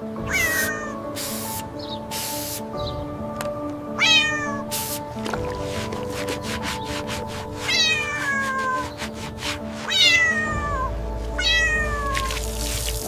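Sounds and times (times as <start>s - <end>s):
background music with steady beat: 0.0s - 13.0s
cat meowing: 0.2s - 1.0s, 4.0s - 4.8s, 7.7s - 8.9s, 9.9s - 12.4s.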